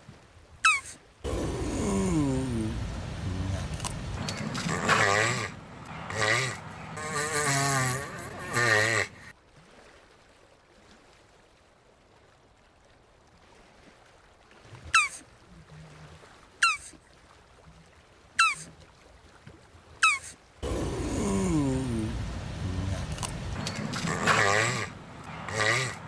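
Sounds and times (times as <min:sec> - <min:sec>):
tortoise squeaks: 0:00.6 - 0:09.3, 0:15.0 - 0:15.2, 0:16.6 - 0:16.9, 0:18.4 - 0:18.7, 0:20.0 - 0:26.0
tortoise groaning: 0:00.7 - 0:09.3, 0:20.0 - 0:26.0.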